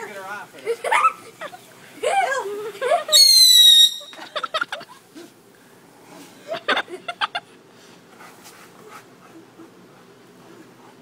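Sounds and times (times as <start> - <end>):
people laughing: 0.6 - 3.2, 4.1 - 5.3, 6.4 - 7.6
whistling firework: 3.1 - 4.2.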